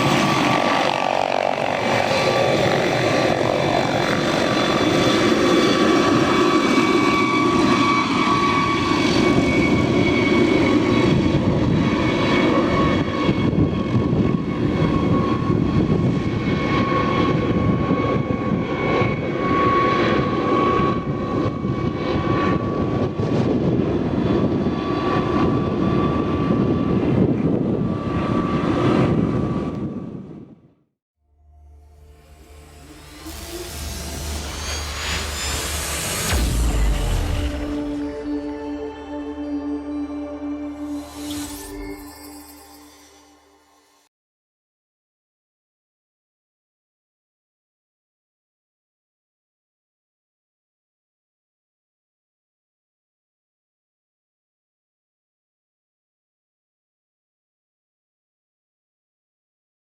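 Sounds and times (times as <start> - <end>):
helicopter rotor and engine: 0.0 - 30.8, 31.8 - 44.0
helicopter turbine whine: 0.0 - 30.8, 31.5 - 44.1.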